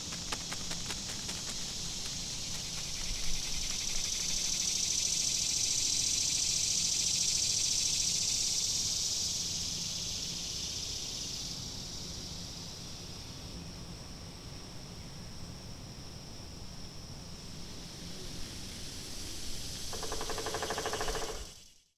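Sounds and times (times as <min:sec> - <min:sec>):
insect buzzing trill: 0:00.0 - 0:12.8, 0:19.4 - 0:21.9.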